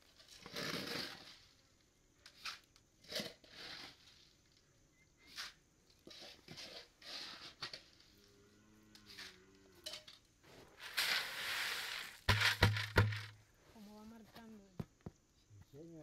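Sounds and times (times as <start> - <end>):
burst of hiss: 10.8 - 12.3.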